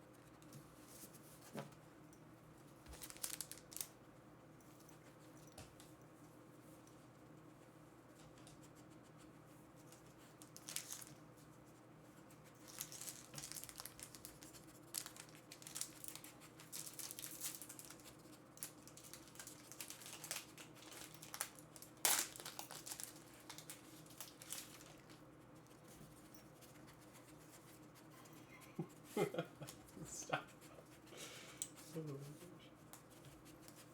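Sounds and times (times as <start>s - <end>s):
foil wrappers crinkling and tearing: 2.9s - 3.9s, 10.4s - 11.2s, 12.6s - 25.2s.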